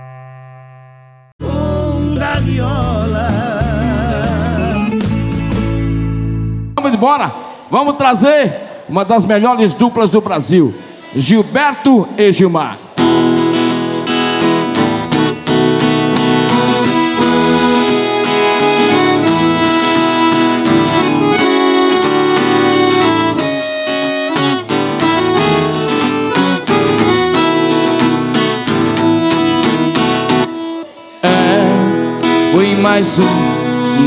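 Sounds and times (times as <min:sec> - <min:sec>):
accordion: 0:00.0 - 0:06.7, 0:12.9 - 0:34.0
guitar playing: 0:00.0 - 0:06.7, 0:12.9 - 0:34.0
vocals singing: 0:01.4 - 0:05.2, 0:31.2 - 0:34.0.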